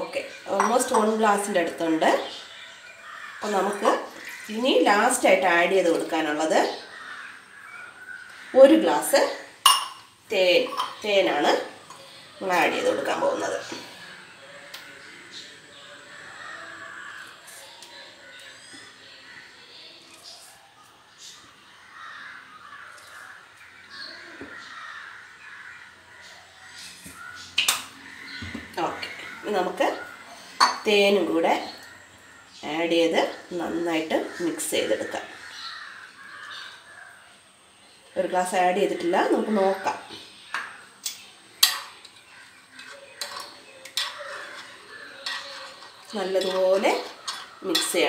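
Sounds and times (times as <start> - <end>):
birds calling harshly: 0.0 - 48.0
spoon clinking against glass: 9.7 - 10.1, 10.7 - 11.0.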